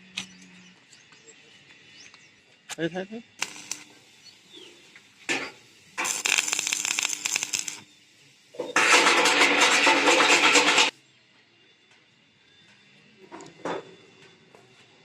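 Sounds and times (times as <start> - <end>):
welding arc crackling: 3.4 - 10.9.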